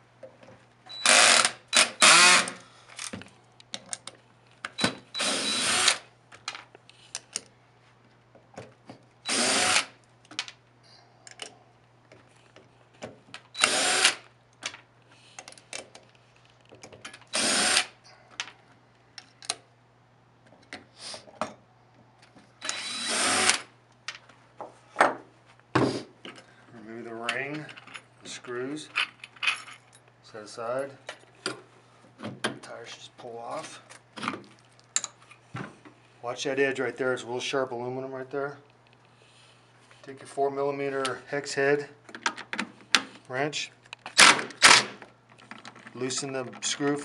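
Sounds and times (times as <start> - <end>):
cordless screw gun spinning: 0.9 - 2.6, 5.2 - 6.0, 9.3 - 10.0, 13.6 - 14.2, 17.3 - 18.0, 22.6 - 23.7.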